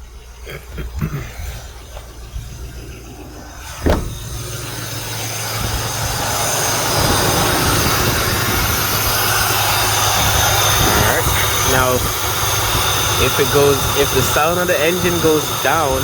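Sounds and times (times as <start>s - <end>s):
truck engine idling: 0.0s - 16.0s
sharp thump: 3.6s - 4.8s.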